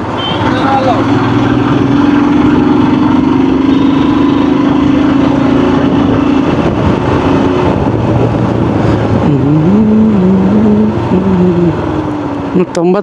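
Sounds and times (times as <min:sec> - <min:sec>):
motorcycle engine running: 0:00.0 - 0:13.0
road noise: 0:00.0 - 0:13.0.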